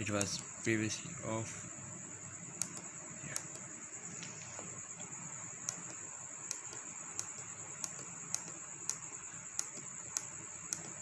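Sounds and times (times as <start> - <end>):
push button clicking: 2.6 - 2.8.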